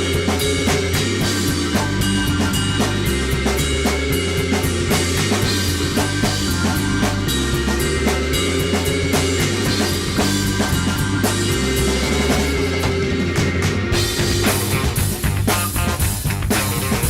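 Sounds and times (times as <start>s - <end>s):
bass line: 0.0s - 17.0s
drum kit beat: 0.0s - 17.0s.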